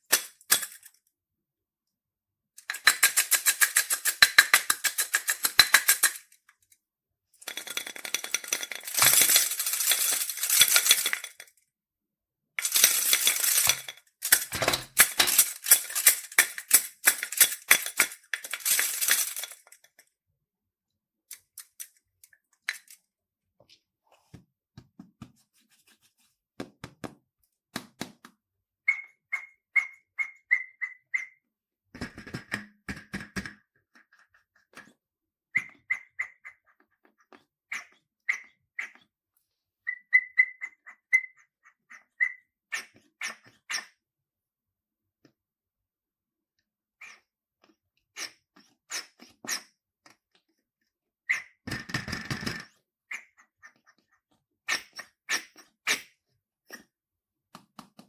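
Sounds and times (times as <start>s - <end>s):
high squeaky chirps: 28.9s - 31.4s, 39.9s - 41.5s.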